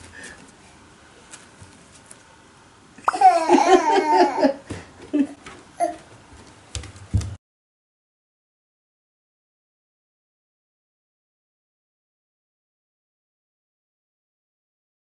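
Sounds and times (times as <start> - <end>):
toddler laughing babble: 3.1 - 4.6, 5.8 - 6.1.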